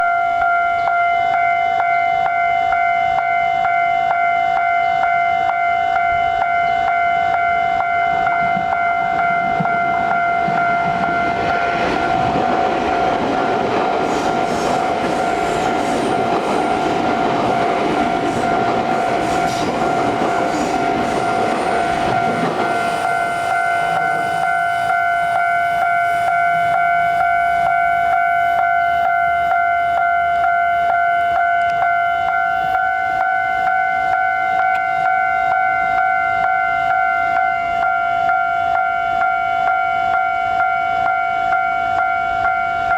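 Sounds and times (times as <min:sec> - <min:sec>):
level crossing warning tone: 0:00.0 - 0:42.9
train rushing past: 0:08.4 - 0:37.0
train wheels clicking on rail joints: 0:09.4 - 0:28.7.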